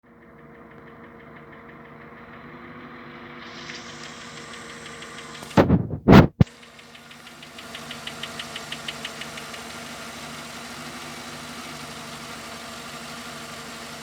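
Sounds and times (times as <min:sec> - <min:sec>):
car engine idling: 0:00.0 - 0:05.6, 0:06.4 - 0:14.0
light engine knock ticking: 0:00.0 - 0:05.6, 0:06.4 - 0:14.0
loud short thumps: 0:05.4 - 0:06.5
sharp click: 0:05.4 - 0:06.5.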